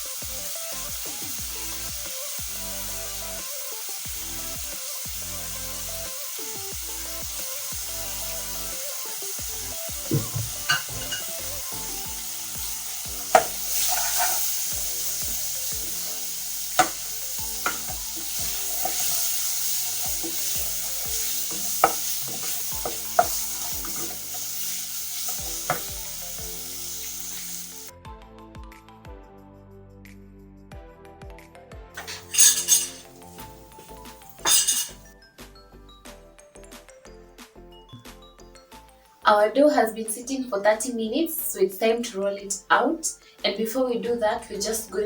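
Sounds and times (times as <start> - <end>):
meat and onions sizzling in oil: 0.0 - 27.9, 32.0 - 35.1
spatula knocking against pan: 21.7 - 24.0.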